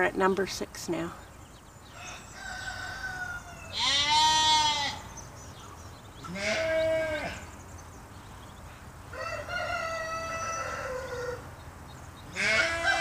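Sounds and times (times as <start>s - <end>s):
rooster crowing: 1.9s - 5.0s, 9.1s - 11.5s, 12.4s - 13.0s.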